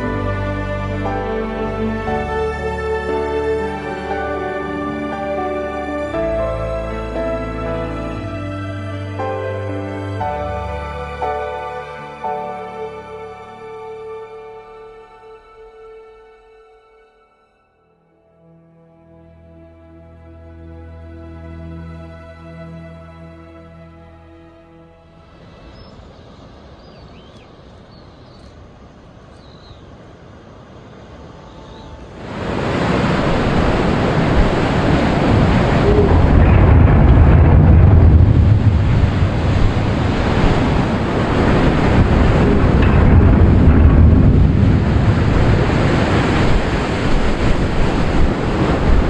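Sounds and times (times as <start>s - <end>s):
rushing water: 0.0s - 16.6s, 19.3s - 49.0s
wind buffeting microphone: 25.6s - 49.0s.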